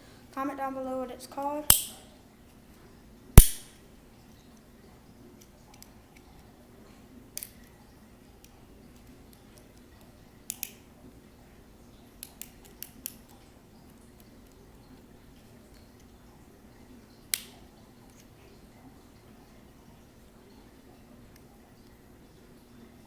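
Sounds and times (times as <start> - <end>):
toy and packaging clicks and snaps: 1.7 - 2.0, 3.4 - 3.7, 10.5 - 10.8, 17.3 - 17.6.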